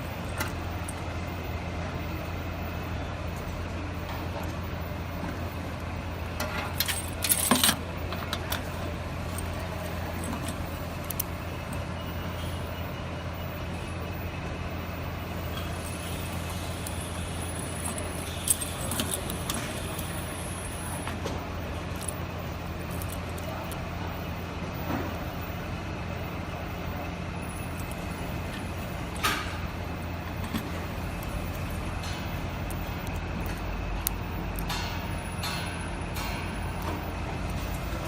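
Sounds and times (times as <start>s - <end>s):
steady low hum: 0.0s - 38.0s
metal tools clinking: 6.4s - 11.8s, 15.5s - 21.2s, 21.8s - 22.2s.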